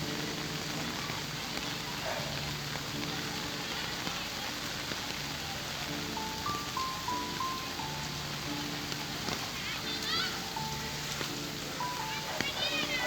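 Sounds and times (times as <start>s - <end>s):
faint music of held notes: 0.0s - 13.0s
heavy rain: 0.0s - 13.0s.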